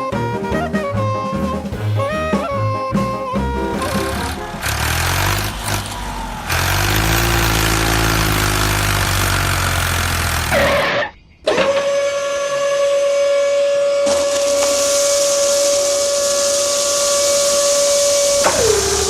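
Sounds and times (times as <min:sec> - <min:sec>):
engine running and revving: 0:01.8 - 0:11.6, 0:14.1 - 0:19.0
high whistle-like tone: 0:10.6 - 0:19.0.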